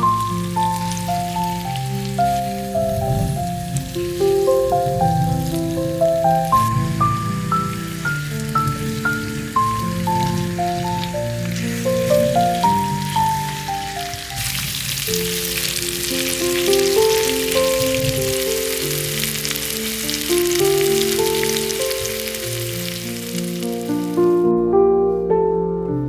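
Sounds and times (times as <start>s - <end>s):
food sizzling in hot oil: 0.0s - 24.3s
soft plucked and keyboard music: 0.0s - 26.0s.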